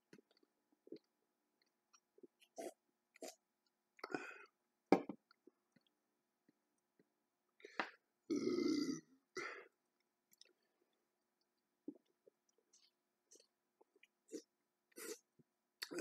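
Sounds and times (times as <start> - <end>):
man burping: 8.3 - 9.5.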